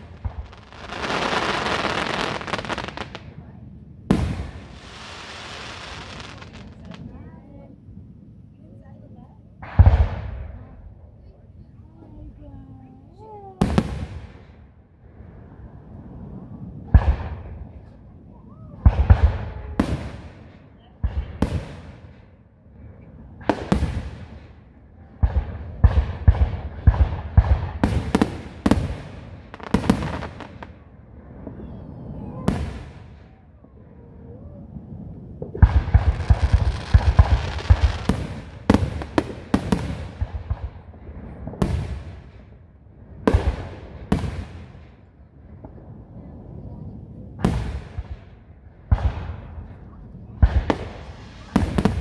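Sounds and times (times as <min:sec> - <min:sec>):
crackling firework shells: 0:00.0 - 0:03.4, 0:04.1 - 0:07.3, 0:23.4 - 0:33.7, 0:34.7 - 0:42.6, 0:43.2 - 0:52.0
fireworks bursting: 0:00.0 - 0:52.0.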